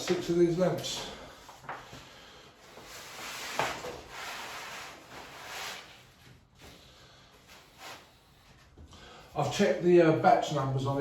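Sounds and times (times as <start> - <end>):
wallpaper rustling and scraping: 0.0 - 8.8.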